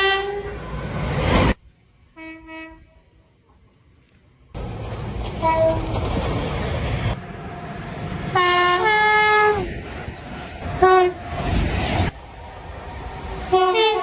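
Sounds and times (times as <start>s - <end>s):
train horn blasts: 0.0s - 0.6s, 2.2s - 3.0s, 5.4s - 6.0s, 8.3s - 9.7s, 10.8s - 11.3s, 13.5s - 14.0s
train rumbling: 0.0s - 1.6s, 4.6s - 14.0s.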